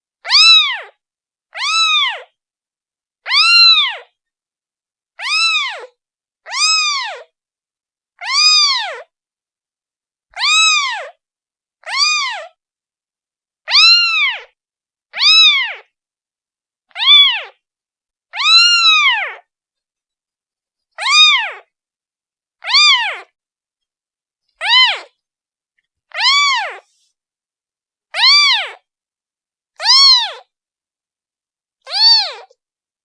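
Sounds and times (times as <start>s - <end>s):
kitten meowing: 0.2s - 0.9s, 1.5s - 2.3s, 3.3s - 4.1s, 5.2s - 5.9s, 6.5s - 7.3s, 8.2s - 9.1s, 10.4s - 11.2s, 11.8s - 12.5s, 13.7s - 15.9s, 16.9s - 17.6s, 18.3s - 19.4s, 21.0s - 21.7s, 22.6s - 23.3s, 24.6s - 25.1s, 26.1s - 27.0s, 28.1s - 28.8s, 29.8s - 30.5s, 31.8s - 32.6s.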